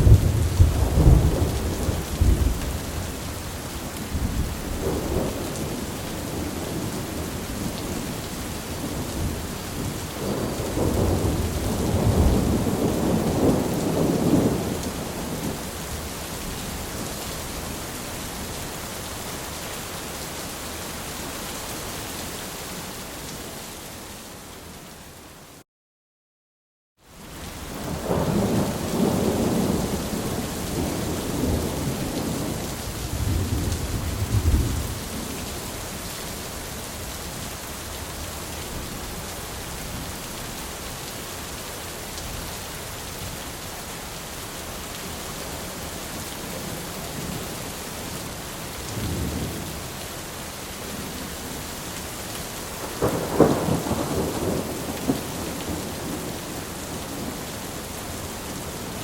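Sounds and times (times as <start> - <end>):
rolling thunder: 0.0 - 3.0, 8.8 - 15.6, 27.8 - 35.4, 52.8 - 57.5
steady rain: 0.0 - 25.6, 27.0 - 59.0.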